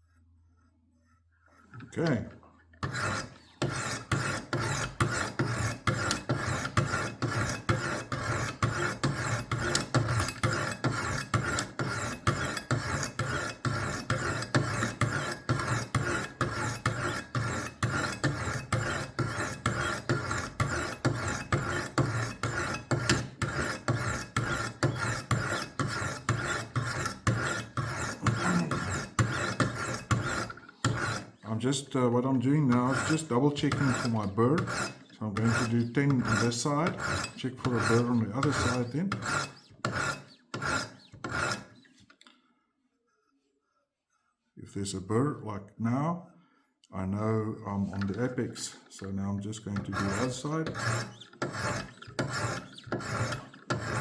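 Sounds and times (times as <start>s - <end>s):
sharpening stones rasping on blade: 2.8s - 31.5s, 32.8s - 42.0s, 49.8s - 54.0s.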